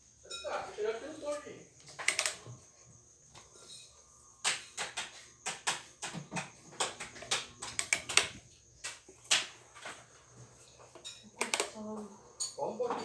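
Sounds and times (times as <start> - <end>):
sharp clicks and knocks: 1.9 - 2.6, 4.4 - 9.6, 10.9 - 11.8.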